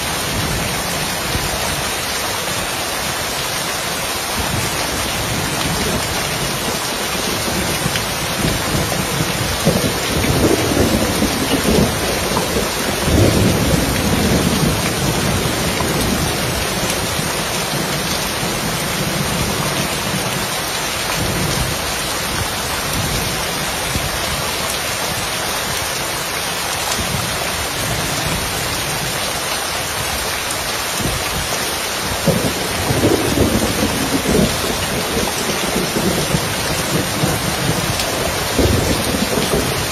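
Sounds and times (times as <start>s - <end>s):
rain falling on a roof: 0.0s - 39.9s
thunder rumbling: 5.2s - 20.4s, 32.0s - 39.9s.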